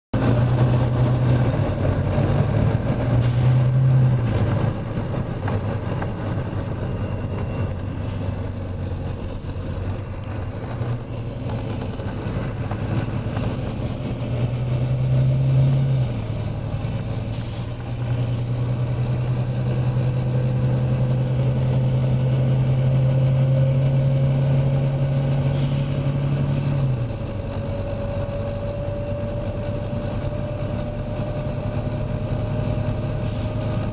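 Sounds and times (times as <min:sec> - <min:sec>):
bus diesel engine running: 0:00.1 - 0:33.9
air brake hisses: 0:03.2 - 0:03.8, 0:17.2 - 0:17.9, 0:25.5 - 0:26.2, 0:33.2 - 0:33.9.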